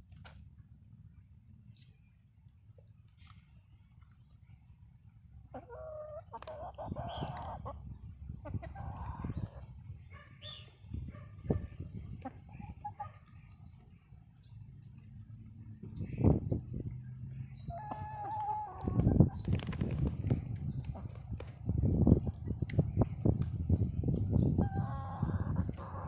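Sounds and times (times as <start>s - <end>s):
chickens clucking and calling: 5.4s - 14.0s, 15.8s - 26.0s
steady low rumble: 15.4s - 25.8s.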